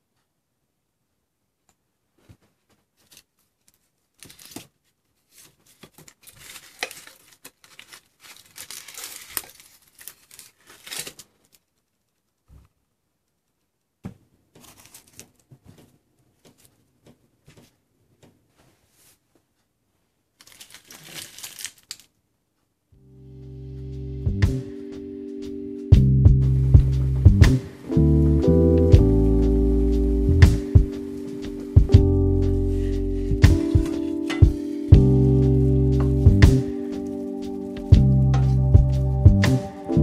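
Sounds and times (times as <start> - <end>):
packaging crinkling and tearing: 3.1 - 12.3, 14.6 - 15.6, 20.4 - 22.2.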